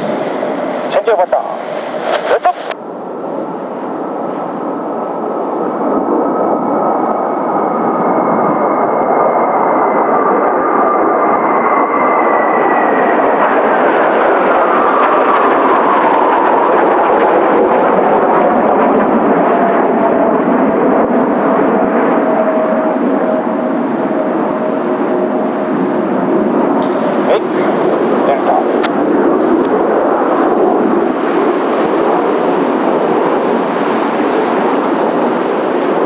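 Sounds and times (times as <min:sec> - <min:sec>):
jets flying past roaring: 0:00.0 - 0:36.0.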